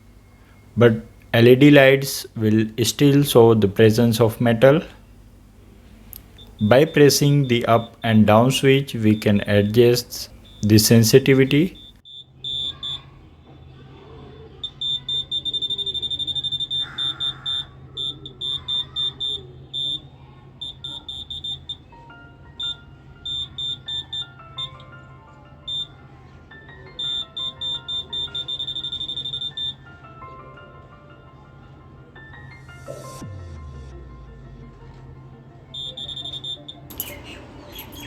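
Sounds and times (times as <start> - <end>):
metal detector beeping: 6.2 - 13.1, 14.6 - 21.9, 22.6 - 25.0, 25.7 - 25.9, 27.0 - 29.8, 35.8 - 37.0
electronic music: 32.9 - 37.8.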